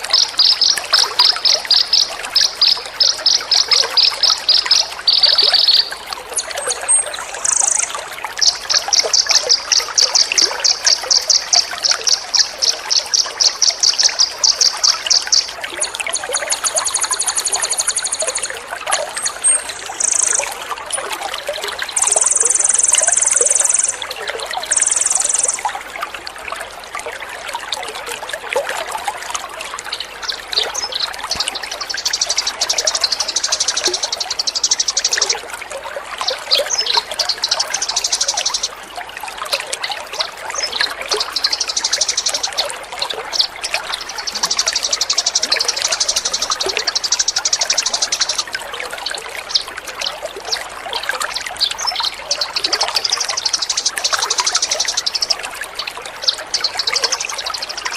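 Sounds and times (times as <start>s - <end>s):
songbird singing rapid notes: 0.0s - 20.7s, 21.8s - 25.7s, 30.2s - 35.4s, 40.5s - 48.6s
water trickling: 0.0s - 57.9s.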